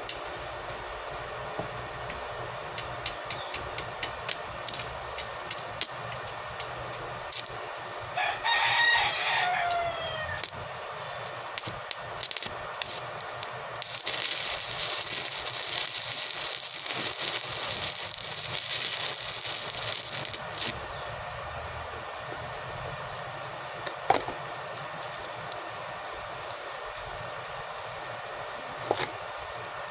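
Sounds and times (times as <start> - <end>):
arc welder crackling hiss: 2.8 - 8.5, 9.4 - 21.2
rooster crowing: 8.1 - 10.6.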